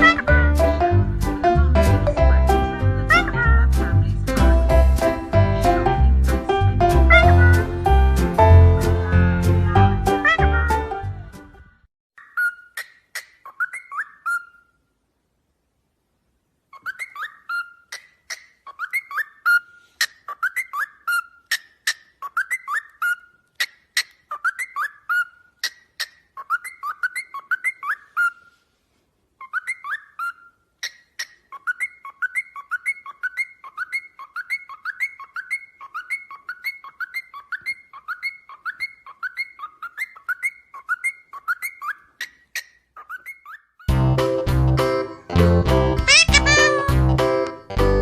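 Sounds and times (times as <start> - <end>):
parrot whistling: 29.4 - 43.9, 46.1 - 47.0.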